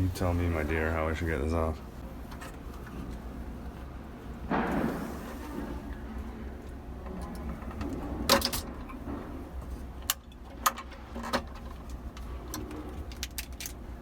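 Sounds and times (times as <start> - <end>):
low steady hum: 0.0 - 14.0
clicks of tools and metal parts: 7.3 - 9.0.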